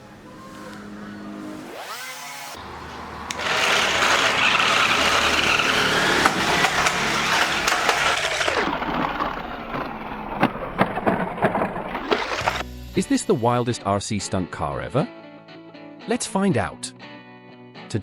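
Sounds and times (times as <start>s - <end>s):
toy car wheels rolling: 3.3s - 12.6s.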